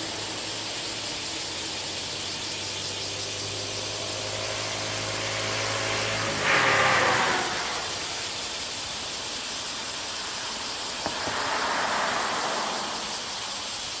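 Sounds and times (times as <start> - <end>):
hiss: 0.0 - 14.0
electric train rushing past: 3.8 - 14.0.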